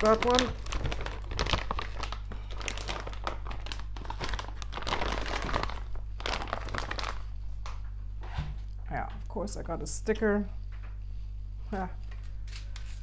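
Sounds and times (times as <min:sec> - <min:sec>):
plastic bag crinkling: 0:00.0 - 0:07.8
steady low hum: 0:00.0 - 0:13.0.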